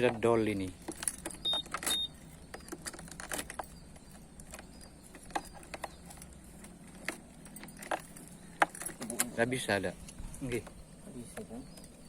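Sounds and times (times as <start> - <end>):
short high beeps: 1.4 - 2.2.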